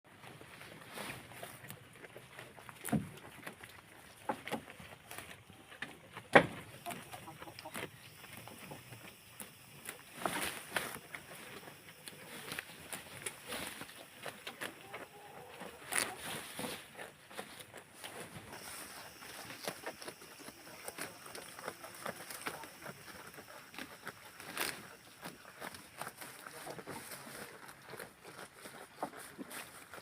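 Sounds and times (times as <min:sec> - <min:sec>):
rustles: 0:00.1 - 0:30.0
faint animal call: 0:14.5 - 0:16.8.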